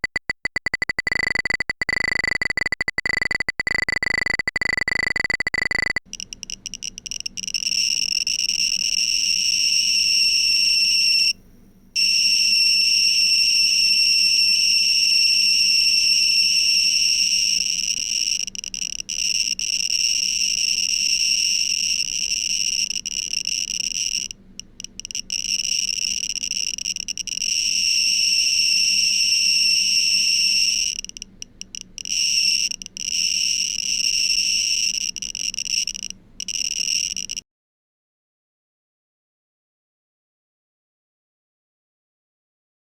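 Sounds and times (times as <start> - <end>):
geiger counter crackling: 0.0 - 10.6, 15.8 - 37.4.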